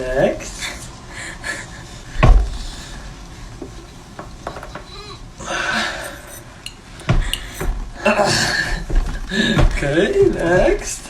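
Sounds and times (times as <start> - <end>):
heavy thump: 2.2 - 2.9, 7.0 - 10.9
joints cracking: 6.0 - 11.0.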